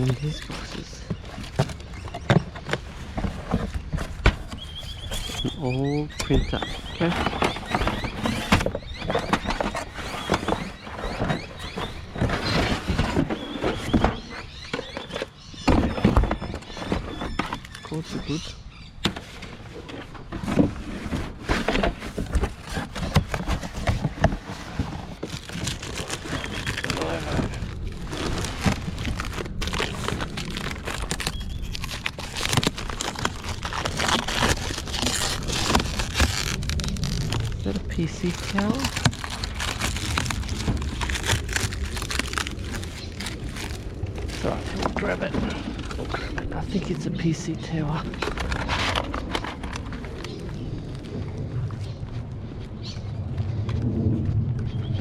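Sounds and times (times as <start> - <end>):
knocks and scrapes of rummaged junk: 0.0 - 17.9, 19.0 - 27.5.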